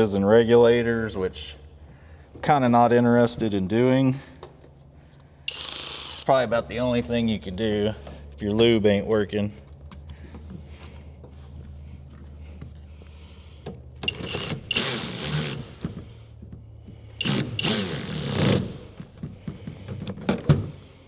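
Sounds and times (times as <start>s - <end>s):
door mechanism grinding: 5.5s - 6.3s, 14.0s - 16.0s, 17.2s - 19.4s.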